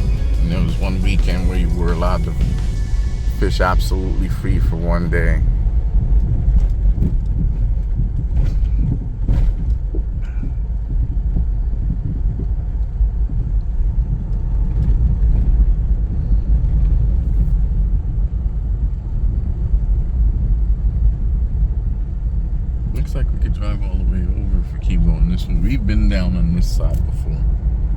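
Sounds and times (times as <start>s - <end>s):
vehicle engine and tyres rumbling: 0.0s - 27.9s.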